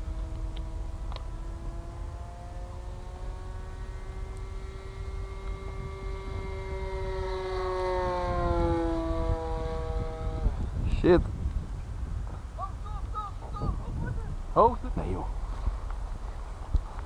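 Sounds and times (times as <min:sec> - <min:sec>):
model airplane motor whining: 0:00.0 - 0:10.9.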